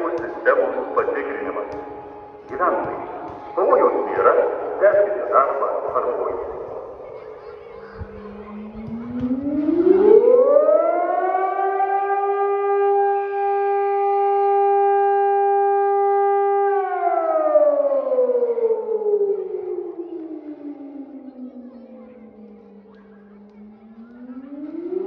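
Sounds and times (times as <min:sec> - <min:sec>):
warning siren rising and falling: 0:08.5 - 0:21.6, 0:23.6 - 0:25.0.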